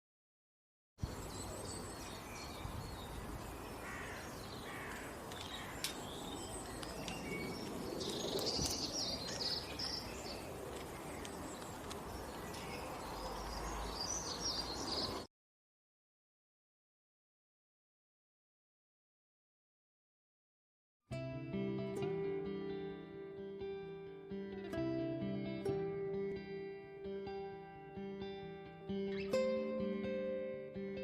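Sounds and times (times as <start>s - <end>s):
birds chirping: 1.0s - 15.3s.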